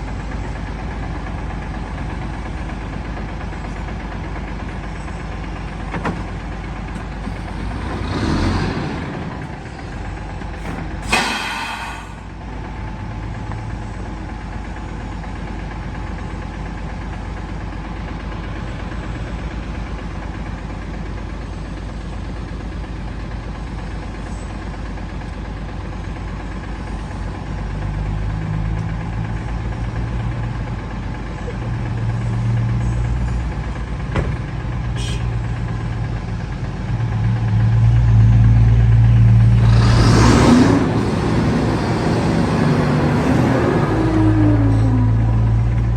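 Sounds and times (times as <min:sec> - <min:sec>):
diesel engine revving: 0:00.0 - 0:14.8, 0:26.9 - 0:45.9.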